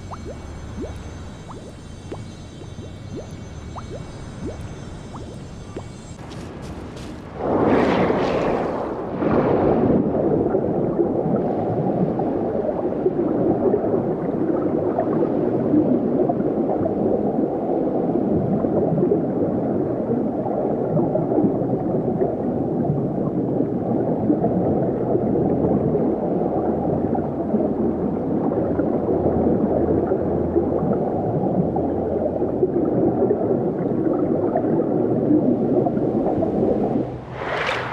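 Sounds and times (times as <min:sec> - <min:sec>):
water gurgling and bubbling: 0:00.0 - 0:06.2, 0:08.4 - 0:37.9
brief whoosh: 0:37.2 - 0:37.9.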